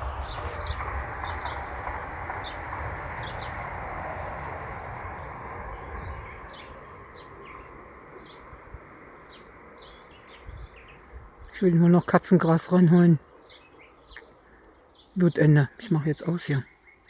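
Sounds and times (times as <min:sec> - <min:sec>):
distant motor drone: 0:00.0 - 0:10.3
small birds chirping: 0:00.0 - 0:17.0.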